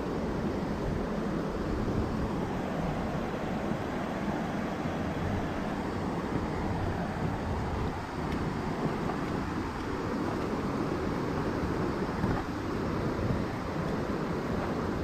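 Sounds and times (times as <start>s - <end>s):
river flowing: 0.0s - 15.0s
wind buffeting microphone: 0.0s - 15.0s.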